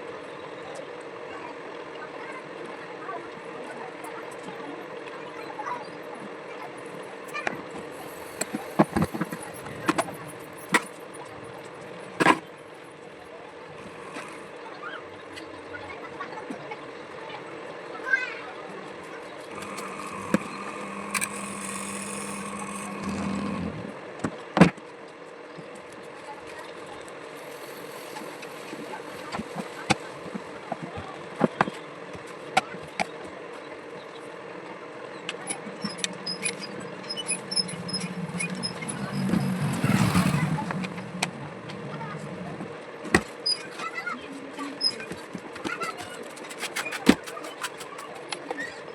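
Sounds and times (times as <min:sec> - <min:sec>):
steady faint hum: 0:06.8 - 0:24.3, 0:25.5 - 0:43.3.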